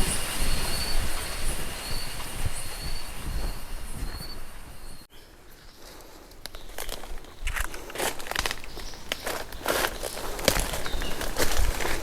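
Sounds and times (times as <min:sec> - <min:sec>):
insect trilling: 0:00.0 - 0:05.0
leaves and twigs rustling: 0:00.0 - 0:12.0
steady hiss: 0:00.0 - 0:12.0.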